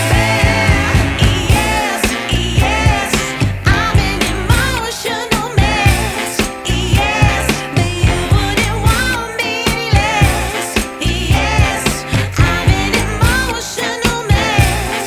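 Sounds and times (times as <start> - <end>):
pop song with vocals: 0.0 - 15.0.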